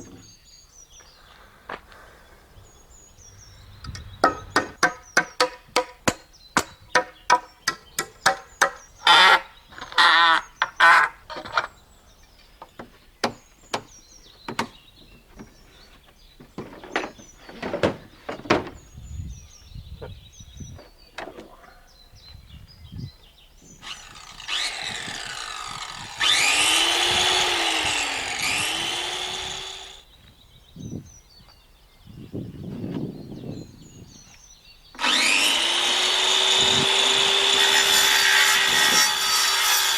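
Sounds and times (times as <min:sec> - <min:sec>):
sharp knocks on wood: 0:04.2 - 0:08.8
power saw cutting wood: 0:23.8 - 0:30.0, 0:35.0 - 0:39.9.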